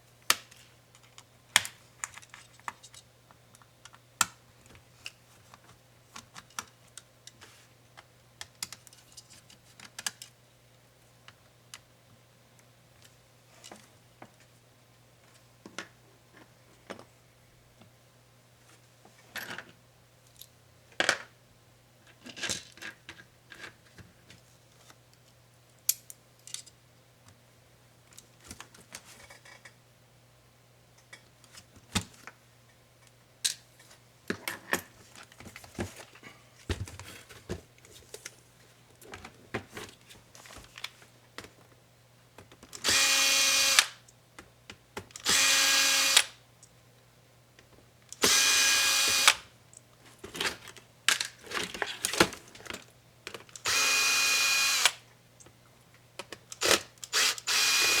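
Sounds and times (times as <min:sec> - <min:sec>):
power screwdriver whirring: 0:42.8 - 0:44.0, 0:45.2 - 0:46.4, 0:48.2 - 0:49.4, 0:53.6 - 0:55.0, 0:56.6 - 0:58.0.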